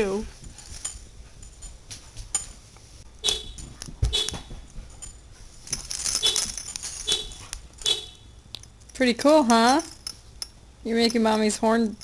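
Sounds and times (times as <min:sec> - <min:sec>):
keys clicking and rattling: 0:00.6 - 0:02.5, 0:04.9 - 0:08.0, 0:08.6 - 0:11.4
car horn chirps: 0:03.2 - 0:04.6, 0:06.2 - 0:08.4.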